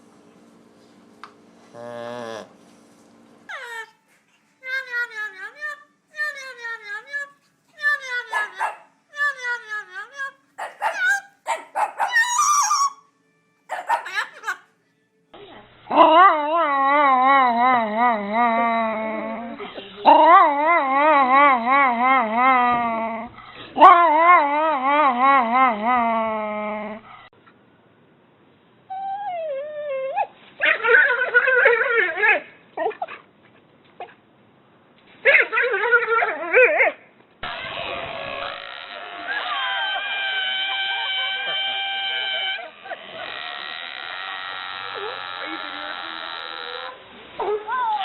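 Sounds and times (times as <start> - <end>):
animal wavering cries: 3.5 - 4.0, 4.6 - 13.1, 13.7 - 14.7, 37.4 - 48.0
dog howling call: 10.6 - 13.0, 39.2 - 42.9.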